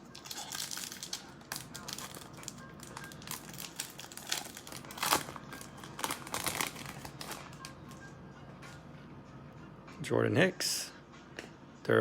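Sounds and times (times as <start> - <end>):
plastic wrapper crinkling and tearing: 0.1 - 8.0.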